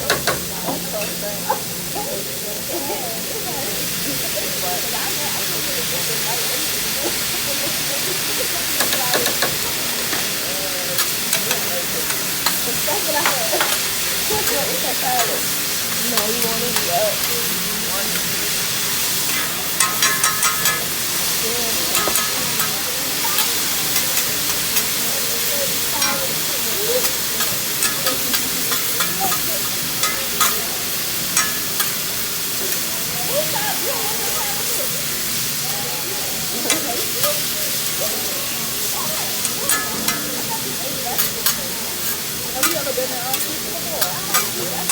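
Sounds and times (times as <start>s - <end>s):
food sizzling on griddle: 0.0s - 44.9s
murmur of voices: 0.0s - 44.9s
metal utensils clicking: 19.1s - 25.0s, 26.0s - 30.7s, 31.3s - 32.0s, 39.3s - 44.9s.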